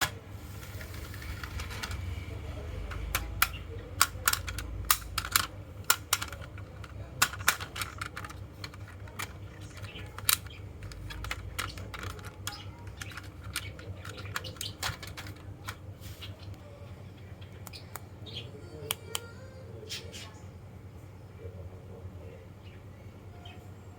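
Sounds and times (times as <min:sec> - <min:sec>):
low steady rumble: 0:00.0 - 0:23.9
marbles clicking down marble run: 0:04.0 - 0:15.5.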